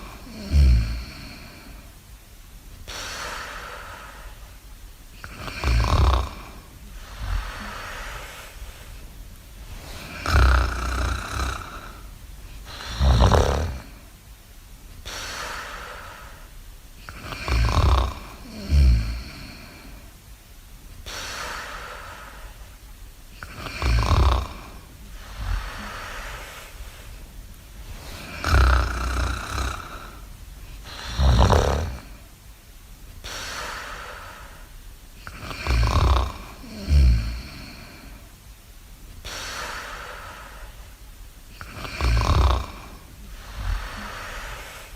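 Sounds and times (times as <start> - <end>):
loud low snoring: 0.0 - 1.8, 5.2 - 8.3, 9.7 - 14.1, 17.1 - 20.0, 23.4 - 26.5, 27.9 - 32.2, 35.2 - 38.2, 41.6 - 44.9
breathing: 2.9 - 4.5, 6.8 - 10.4, 15.0 - 17.3, 21.0 - 22.8, 24.6 - 32.3, 33.2 - 35.8, 39.2 - 40.9, 42.8 - 44.9.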